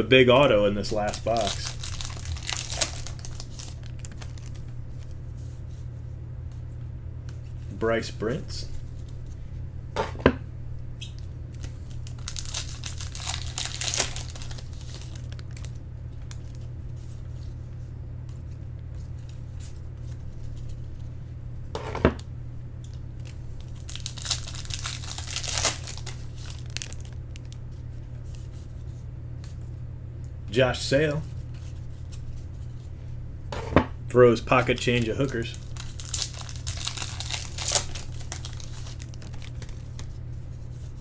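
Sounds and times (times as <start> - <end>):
steady low hum: 0.0 - 41.0
card pack wrappers tearing: 0.4 - 5.1, 11.5 - 16.6, 23.2 - 27.6, 34.5 - 40.2.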